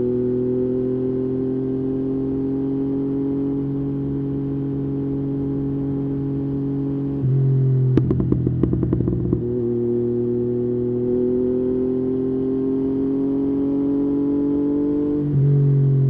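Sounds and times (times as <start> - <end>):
motorcycle engine: 5.0 - 16.0
exhaust popping and crackling: 8.0 - 9.8.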